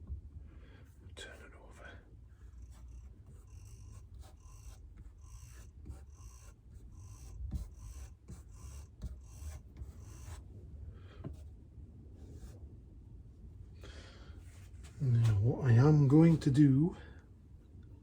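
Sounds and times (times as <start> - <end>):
scraping strokes on clay pot: 1.2 - 10.5, 14.5 - 16.6
faint handling: 13.7 - 17.1.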